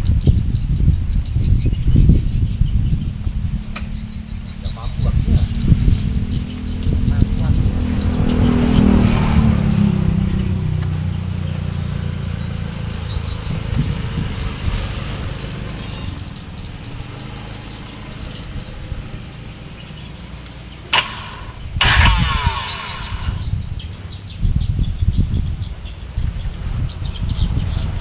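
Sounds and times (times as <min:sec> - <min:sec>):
diesel engine running: 0:03.1 - 0:23.7.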